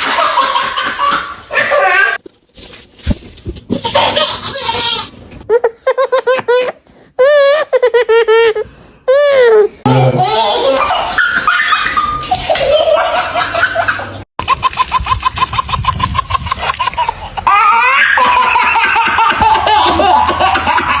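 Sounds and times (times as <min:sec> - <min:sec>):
person laughing hard: 0:05.5 - 0:21.0.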